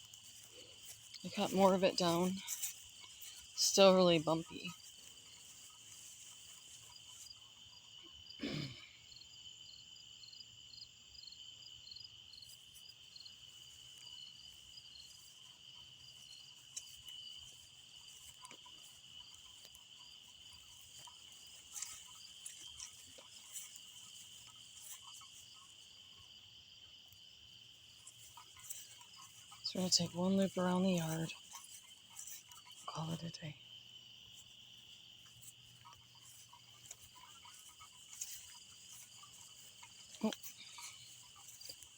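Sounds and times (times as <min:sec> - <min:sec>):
insects chirping: 0:00.0 - 0:41.9
insects droning: 0:00.0 - 0:41.9.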